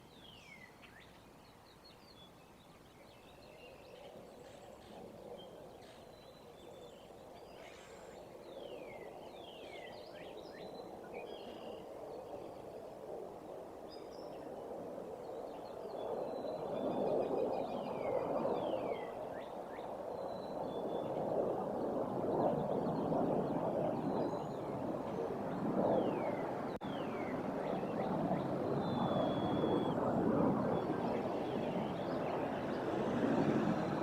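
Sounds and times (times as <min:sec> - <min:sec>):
jet aircraft rumble: 0:21.6 - 0:34.0
birds whistling: 0:26.0 - 0:30.0.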